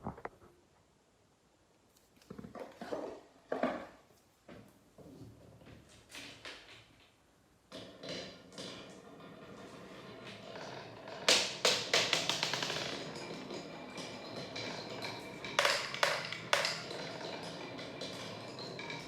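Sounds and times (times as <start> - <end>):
marbles rolling on wooden run: 10.2 - 19.0
marbles clacking: 11.3 - 17.5.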